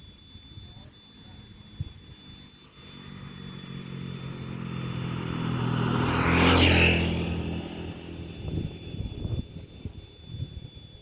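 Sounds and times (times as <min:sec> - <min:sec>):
vehicle passing by: 0:02.9 - 0:09.8.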